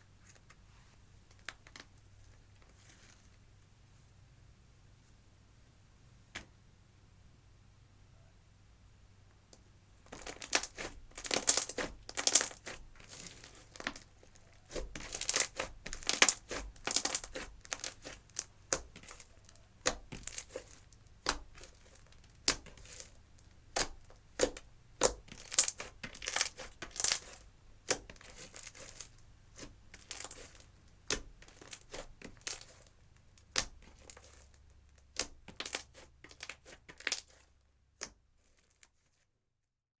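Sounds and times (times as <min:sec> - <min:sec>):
slime crackling and popping: 0:10.1 - 0:37.4.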